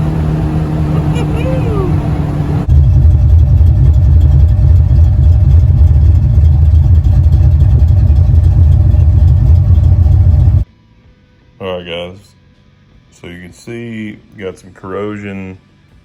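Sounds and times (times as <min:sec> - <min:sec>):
car exhaust rumble: 0:00.0 - 0:10.6.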